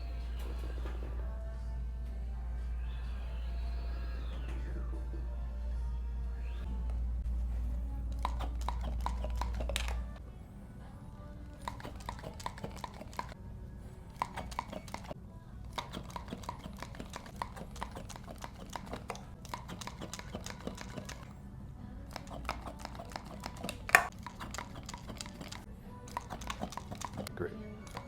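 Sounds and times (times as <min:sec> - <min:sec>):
quick clicks and taps: 0:22.1 - 0:27.3.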